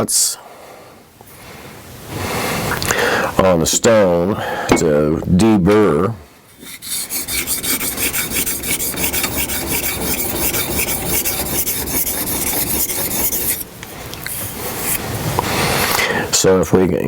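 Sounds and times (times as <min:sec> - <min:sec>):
sharpening stone scraping blade: 0:06.6 - 0:13.7, 0:14.3 - 0:15.0.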